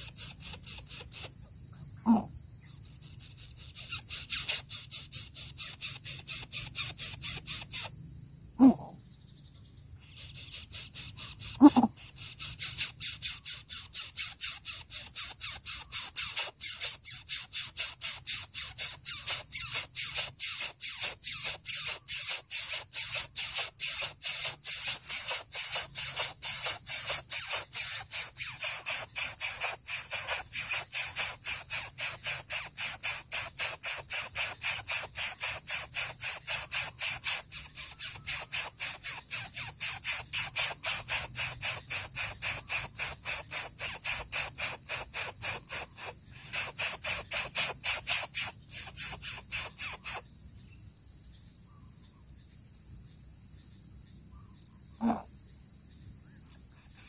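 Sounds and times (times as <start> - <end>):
chick hissing rasping calls: 0.0 - 1.4, 2.1 - 2.3, 2.9 - 7.9, 8.6 - 8.9, 10.0 - 50.3, 55.0 - 55.3, 56.6 - 57.0
short low falling calls: 8.6 - 9.0.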